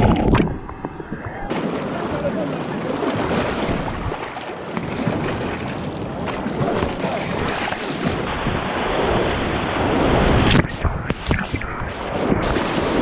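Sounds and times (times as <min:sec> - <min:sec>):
wind buffeting microphone: 0:00.0 - 0:13.0
whitewater rushing and splashing: 0:01.3 - 0:10.7.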